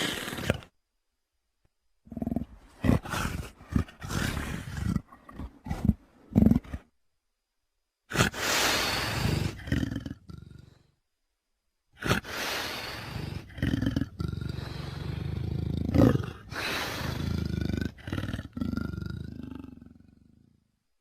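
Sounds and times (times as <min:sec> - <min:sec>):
creature growling roars: 0:00.0 - 0:00.6.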